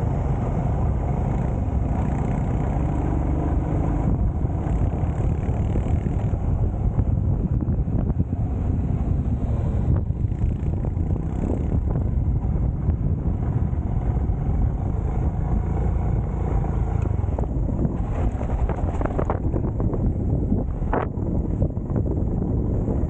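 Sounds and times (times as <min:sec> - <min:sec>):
motorcycle engine running: 0:00.0 - 0:23.0
wind rumbling on microphone: 0:00.0 - 0:23.0.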